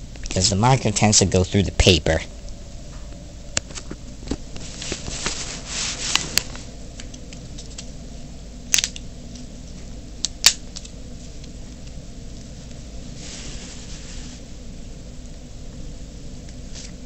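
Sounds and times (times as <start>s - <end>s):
paper rustling: 3.7s - 7.9s, 12.4s - 14.4s.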